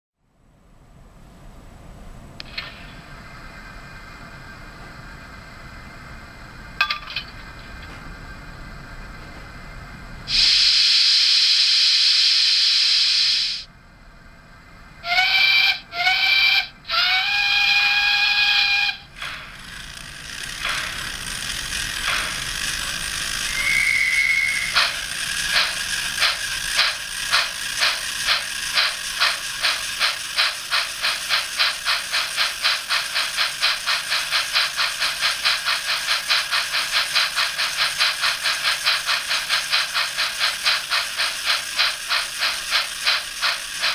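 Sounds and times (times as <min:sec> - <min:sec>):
train whistle: 0:10.3 - 0:13.6, 0:15.0 - 0:19.1, 0:23.4 - 0:25.0
steam hiss: 0:10.3 - 0:13.7, 0:17.1 - 0:43.9
steam locomotive chuffing: 0:10.3 - 0:13.7, 0:14.9 - 0:43.9.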